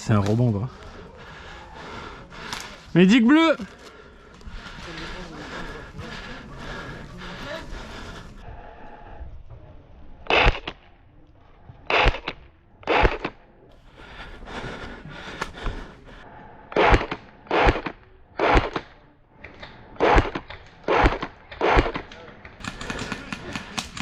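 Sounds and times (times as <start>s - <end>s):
airsoft rifle single shots: 10.3s - 10.8s.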